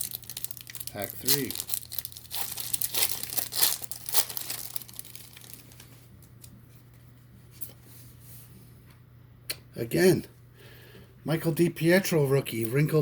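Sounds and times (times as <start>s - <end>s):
wrapper tearing and crinkling: 0.0s - 6.0s
cards rustling: 0.0s - 6.5s.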